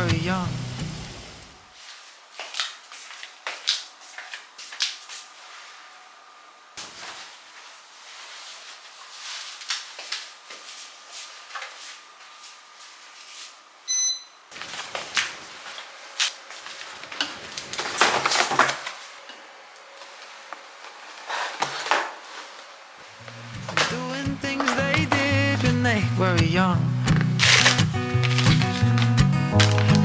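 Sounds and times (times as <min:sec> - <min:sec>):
short electronic beep: 0:13.9 - 0:14.5
household items clicking and knocking: 0:23.6 - 0:25.8, 0:27.1 - 0:30.0.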